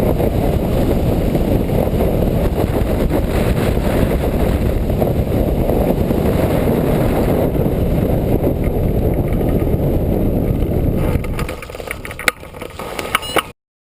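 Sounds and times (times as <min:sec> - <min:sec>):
wind buffeting microphone: 0:00.0 - 0:13.5
sharp clicks and knocks: 0:10.5 - 0:13.5.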